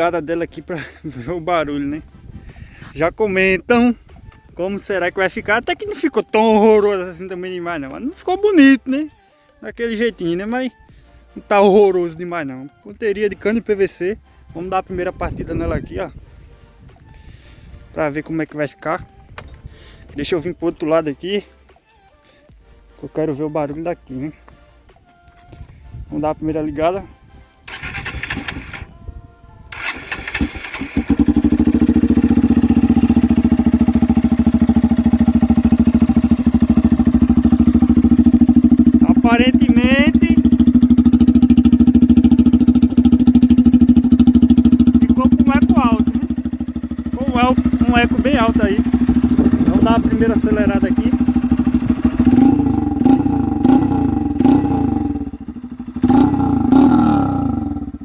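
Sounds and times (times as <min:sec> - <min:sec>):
motorcycle engine cranking: 0:19.3 - 0:19.7, 0:27.7 - 0:29.0, 0:29.7 - 0:58.0
motorcycle engine idling: 0:27.7 - 0:28.9, 0:29.7 - 0:58.0.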